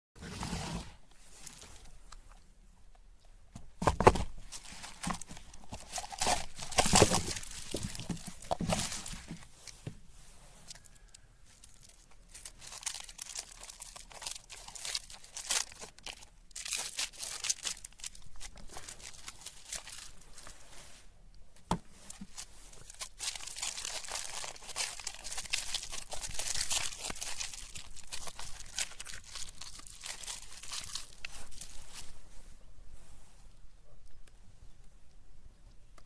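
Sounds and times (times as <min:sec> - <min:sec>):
hard candy crunching in grinder: 0:04.6 - 0:09.3, 0:11.5 - 0:20.3, 0:22.1 - 0:31.8.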